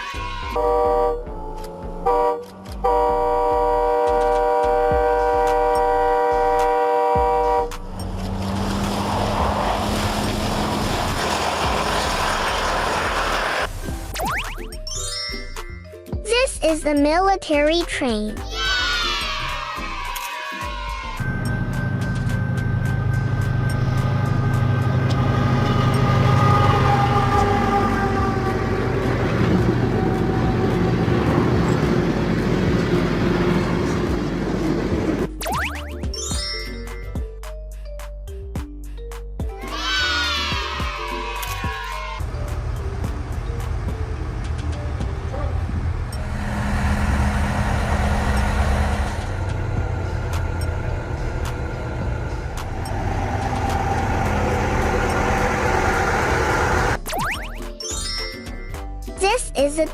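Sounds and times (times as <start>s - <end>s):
train running rumble: 0.5s - 14.1s, 21.2s - 35.4s, 42.1s - 57.0s
train air horn chord: 0.6s - 1.2s, 2.0s - 7.7s, 25.0s - 31.2s
chiming tones: 14.7s - 16.1s, 21.2s - 26.1s, 35.4s - 37.3s, 57.4s - 59.0s
low hum: 42.2s - 57.0s.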